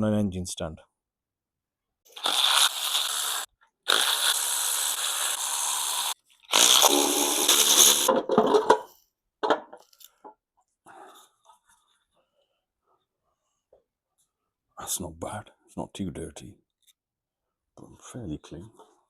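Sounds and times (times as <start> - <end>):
power tool whirring: 2.2 - 8.1.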